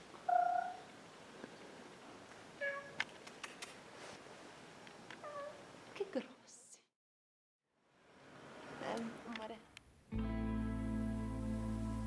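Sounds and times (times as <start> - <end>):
cat meowing: 0.3 - 0.8, 2.6 - 3.0, 5.2 - 5.6.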